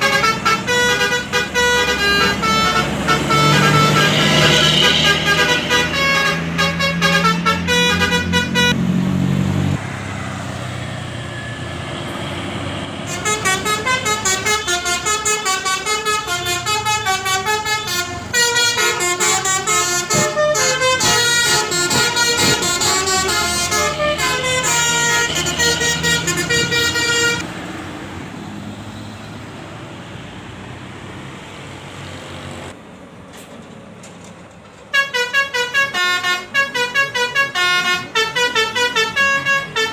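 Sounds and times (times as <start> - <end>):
multi-note bus air horn: 0.0 - 8.8, 13.1 - 27.4, 34.9 - 39.9.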